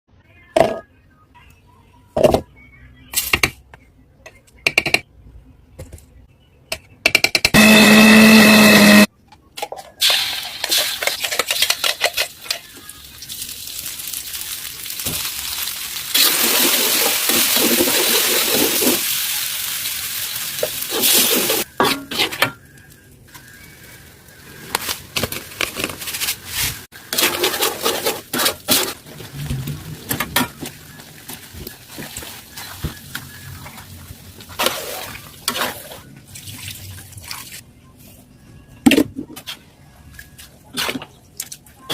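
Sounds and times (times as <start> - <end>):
utensils and dishes clinking: 9.6 - 12.8.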